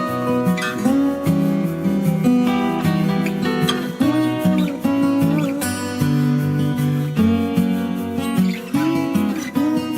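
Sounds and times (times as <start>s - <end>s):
acoustic guitar strumming chords: 0.0s - 9.9s.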